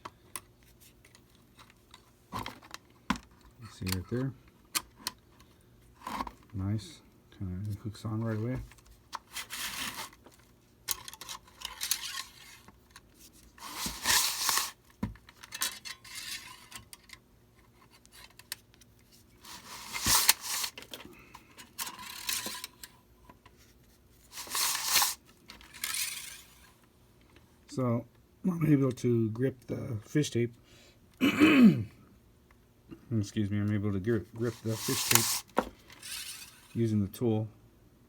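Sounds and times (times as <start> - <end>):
metallic scraping and rattling: 21.6 - 22.9, 24.3 - 26.8, 34.4 - 36.9.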